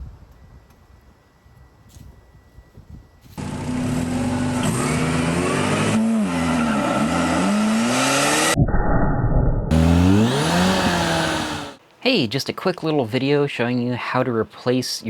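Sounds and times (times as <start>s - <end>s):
car engine revving: 3.4s - 8.6s, 9.7s - 11.8s.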